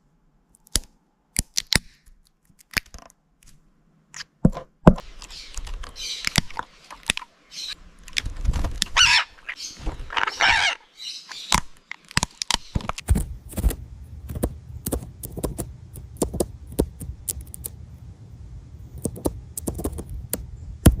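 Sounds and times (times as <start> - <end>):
parrot harsh calls: 8.9 - 11.5
beak crunching apple: 10.2 - 17.8, 19.0 - 21.0.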